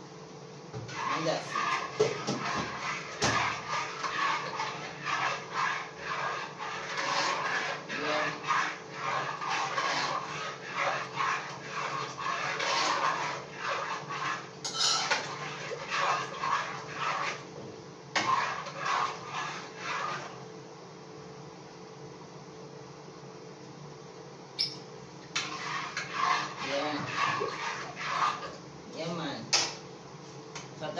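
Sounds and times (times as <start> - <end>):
spoon scraping a container: 0.9 - 17.5, 18.2 - 20.4, 24.6 - 28.6.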